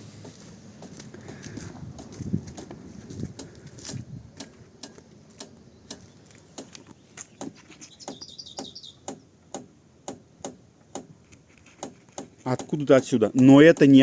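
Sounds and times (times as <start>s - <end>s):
bird chirping: 5.5s - 9.4s.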